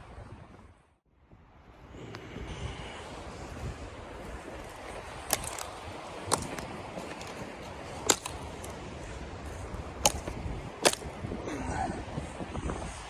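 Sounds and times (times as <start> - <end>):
sharp knocks: 10.0 - 11.1.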